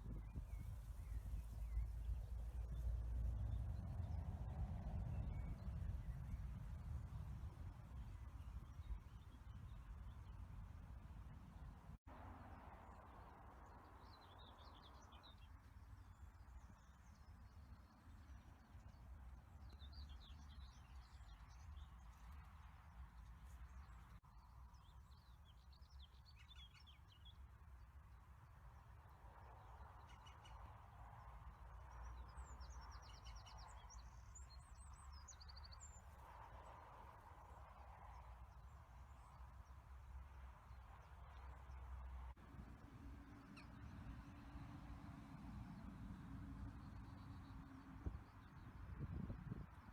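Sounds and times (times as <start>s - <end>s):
songbirds twittering: 0.0s - 11.8s, 13.6s - 28.0s, 28.7s - 36.6s.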